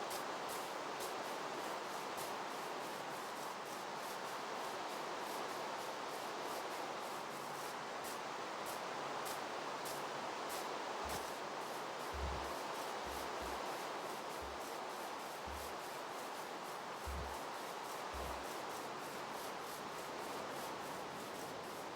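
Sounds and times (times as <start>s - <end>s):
steady rain hiss: 0.0s - 21.9s.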